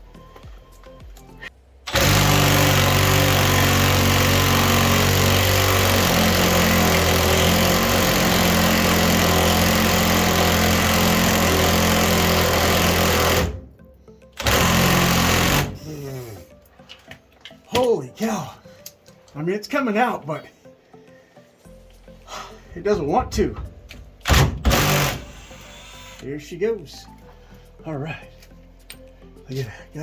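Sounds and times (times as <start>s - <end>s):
impact wrench hammering: 1.9s - 13.6s, 14.4s - 15.8s, 23.0s - 26.2s.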